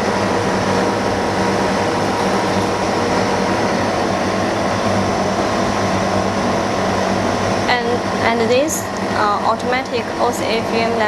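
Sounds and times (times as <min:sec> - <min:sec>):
constant low hum: 0:00.0 - 0:11.0
fan rushing air: 0:00.0 - 0:11.0.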